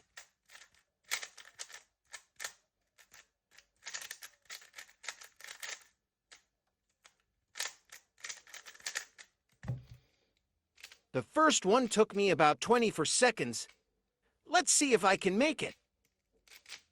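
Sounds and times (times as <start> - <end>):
puzzle cube plastic clicks: 0.5 - 9.3.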